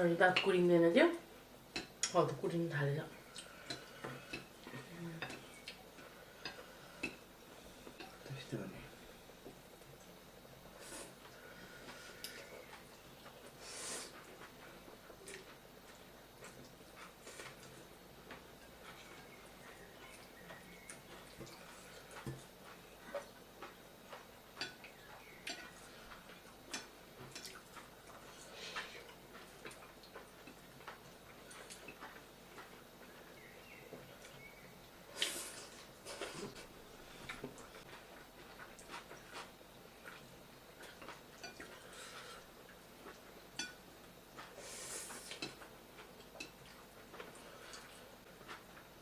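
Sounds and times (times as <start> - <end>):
chewing with wet smacks: 14.1 - 35.0, 35.8 - 44.6, 45.3 - 49.0.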